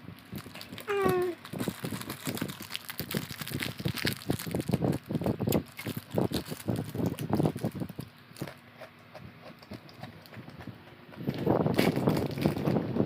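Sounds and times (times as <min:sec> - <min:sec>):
person chewing: 0:05.4 - 0:12.4.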